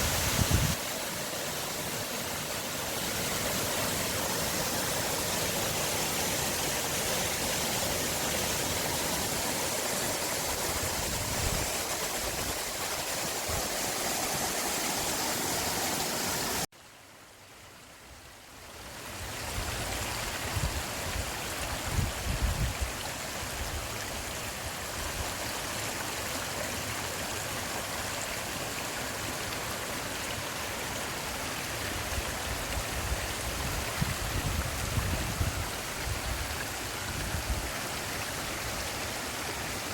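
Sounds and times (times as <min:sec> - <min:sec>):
wind rumbling on microphone: 0:00.0 - 0:00.8, 0:10.4 - 0:13.8, 0:19.2 - 0:24.1, 0:32.1 - 0:37.8
forest stream rushing: 0:00.0 - 0:39.9.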